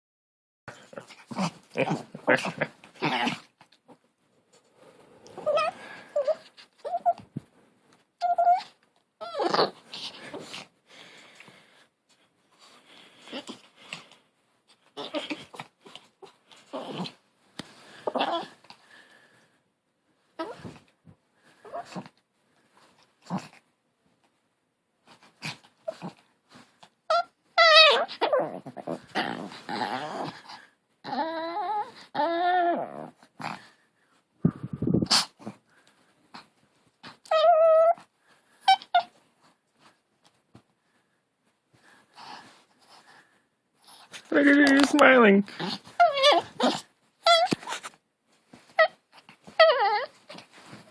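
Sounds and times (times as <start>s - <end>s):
puppy growling: 0.7s - 4.0s, 8.2s - 10.7s, 14.8s - 17.2s, 18.0s - 18.7s, 25.4s - 26.3s, 27.1s - 33.8s, 45.5s - 47.9s, 48.8s - 50.5s
puppy yipping: 8.2s - 9.7s, 27.1s - 28.4s, 46.0s - 47.8s, 48.8s - 50.3s
puppy growl-howling: 8.2s - 9.8s, 27.6s - 33.6s, 45.6s - 47.5s, 49.6s - 50.2s.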